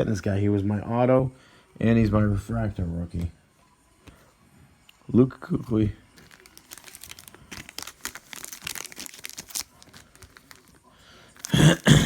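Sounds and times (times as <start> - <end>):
foil wrapper crinkling and tearing: 6.1 - 11.9.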